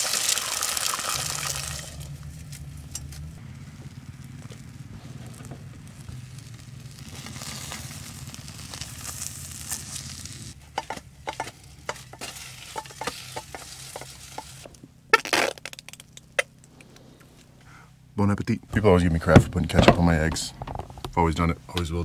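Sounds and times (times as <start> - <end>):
eggs sizzling in a pan: 0.0 - 2.2, 3.7 - 14.7
utensil scraping pan: 10.7 - 14.7.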